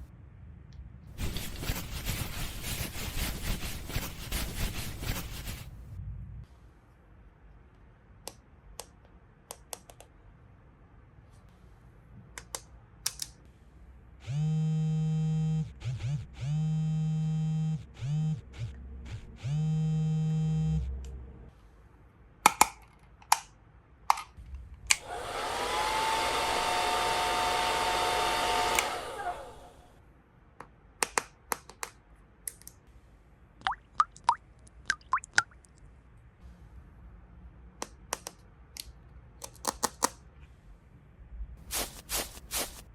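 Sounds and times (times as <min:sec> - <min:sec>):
electronic toy buzz: 0:14.2 - 0:20.8
whirring hiss: 0:25.0 - 0:29.9.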